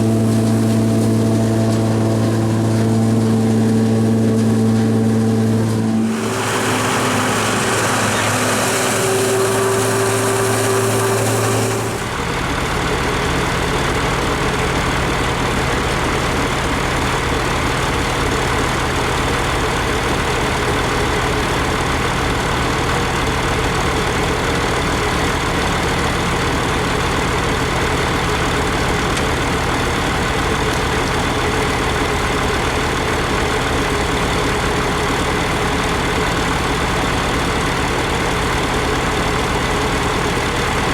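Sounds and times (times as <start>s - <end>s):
low rumble with hum: 0.0s - 6.5s
tractor engine running: 0.0s - 40.9s.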